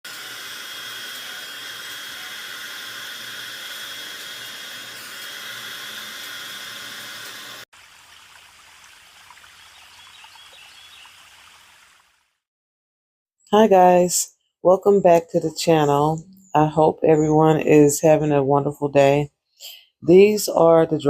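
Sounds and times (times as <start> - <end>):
hair dryer blowing: 0.0 - 7.7
steady hiss: 0.0 - 7.7.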